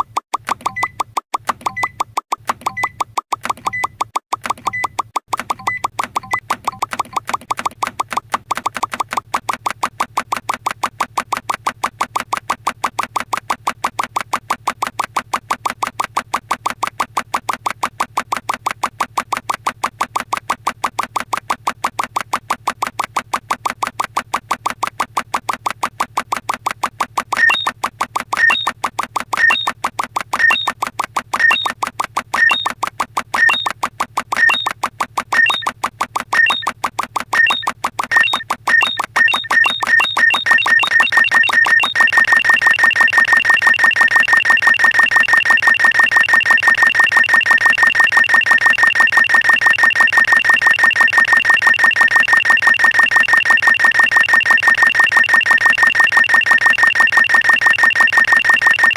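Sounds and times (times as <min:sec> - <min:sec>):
fast electronic ticking: 0:00.0 - 0:58.9
high electronic beep: 0:00.7 - 0:01.1, 0:01.7 - 0:02.0, 0:02.7 - 0:03.0, 0:03.6 - 0:04.0, 0:04.6 - 0:07.2, 0:27.4 - 0:27.8, 0:28.4 - 0:28.8, 0:29.4 - 0:29.8, 0:30.4 - 0:30.8, 0:31.4 - 0:31.8, 0:32.4 - 0:32.8, 0:33.4 - 0:33.7, 0:34.4 - 0:34.7, 0:35.4 - 0:35.7, 0:36.4 - 0:36.7, 0:37.4 - 0:58.9.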